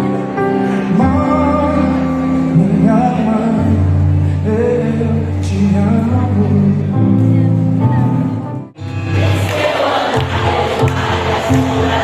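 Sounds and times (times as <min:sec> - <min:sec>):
bass: 0:00.0 - 0:09.4
keyboard chords: 0:00.0 - 0:12.0.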